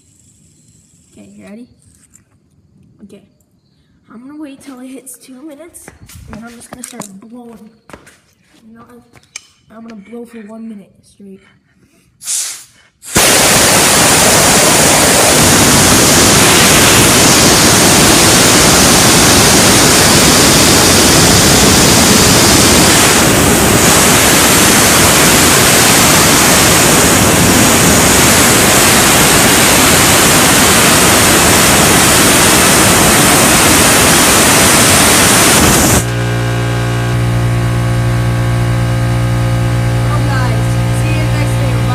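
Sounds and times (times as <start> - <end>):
compressed air hissing: 0.0 - 1.2, 12.1 - 36.2
low hum: 13.2 - 41.9.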